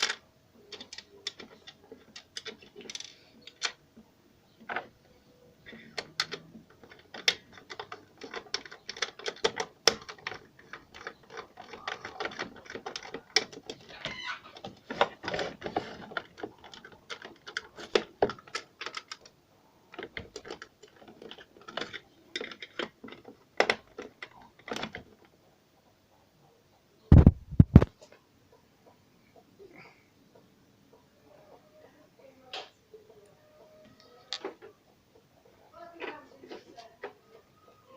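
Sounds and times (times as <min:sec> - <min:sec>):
small parts clicking and rattling: 0:00.0 - 0:03.8, 0:04.6 - 0:25.4
heavy thumps: 0:27.1 - 0:27.9.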